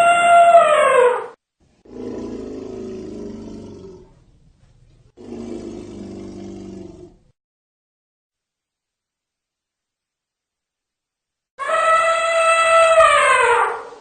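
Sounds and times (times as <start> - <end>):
elephant roaring calls: 1.8 - 4.2, 5.2 - 7.3.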